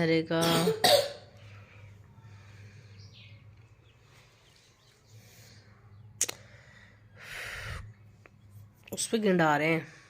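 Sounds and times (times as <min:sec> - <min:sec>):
steady low hum: 0:00.4 - 0:08.9
faint bird chirp: 0:01.4 - 0:07.2.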